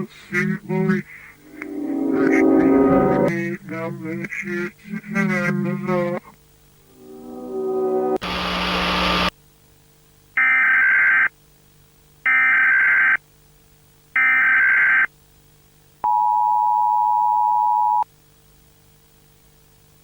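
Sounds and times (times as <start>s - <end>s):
burst of static: 8.2s - 9.3s.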